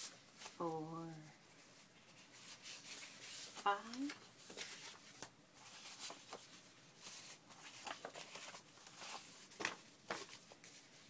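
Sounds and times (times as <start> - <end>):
paper rustling: 1.5 - 11.0.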